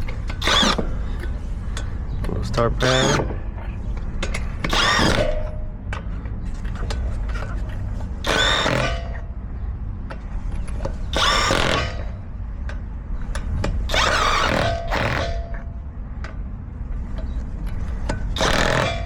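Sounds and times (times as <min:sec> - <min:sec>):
power tool spinning lug nuts: 0:00.0 - 0:01.3, 0:02.8 - 0:03.4, 0:04.3 - 0:05.5, 0:08.2 - 0:09.2, 0:11.1 - 0:12.2, 0:13.9 - 0:15.6, 0:18.0 - 0:19.0
steady low rumble: 0:00.0 - 0:19.0.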